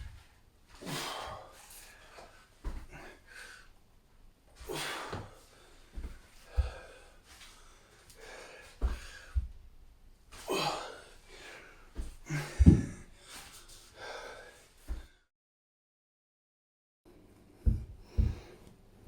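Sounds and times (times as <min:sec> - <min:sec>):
person breathing hard: 0:00.8 - 0:03.8, 0:04.6 - 0:09.6, 0:10.5 - 0:15.3, 0:17.6 - 0:18.7
short dull thuds: 0:17.6 - 0:18.6.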